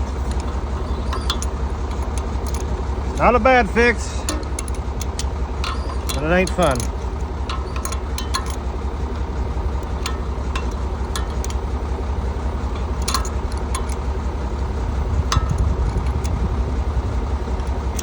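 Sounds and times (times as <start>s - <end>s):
tractor engine running: 0.0s - 18.0s
metallic clicks of tools: 0.1s - 3.4s, 4.1s - 8.7s, 9.7s - 11.7s, 12.7s - 14.1s.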